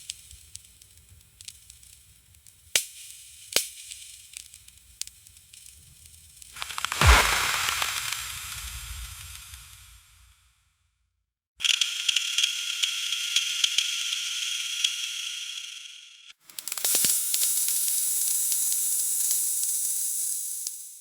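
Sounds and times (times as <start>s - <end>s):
ice and branches falling: 6.6s - 9.6s.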